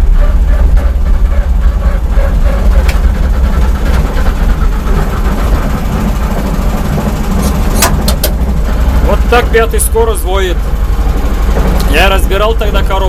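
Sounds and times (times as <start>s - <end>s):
gearbox whine: 0.0s - 13.0s
heavy engine rumble: 0.0s - 13.0s.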